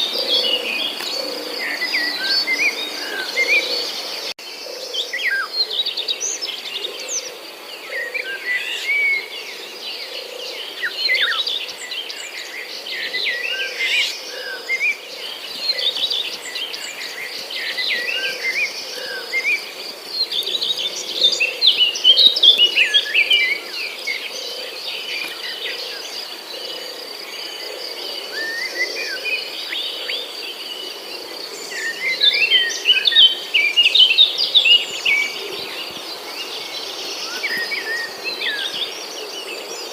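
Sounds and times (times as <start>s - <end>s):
birds chirping and calling: 0.0s - 39.9s.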